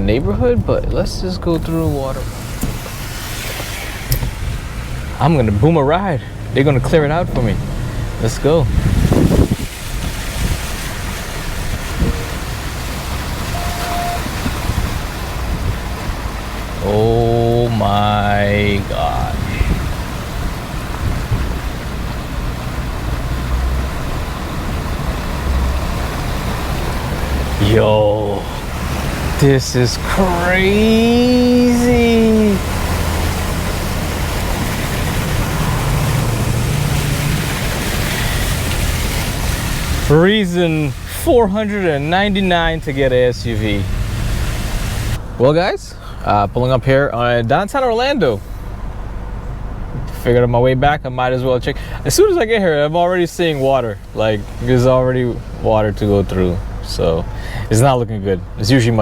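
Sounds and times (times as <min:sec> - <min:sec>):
car humming: 0:00.0 - 0:59.0
water rushing against tyres: 0:00.0 - 0:59.0
short faint tones: 0:11.9 - 0:14.6.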